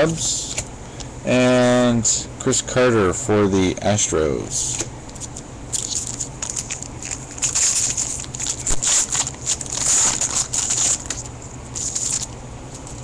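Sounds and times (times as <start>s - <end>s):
steady low hum: 0.0s - 13.0s
foil wrapper crinkling: 4.7s - 13.0s.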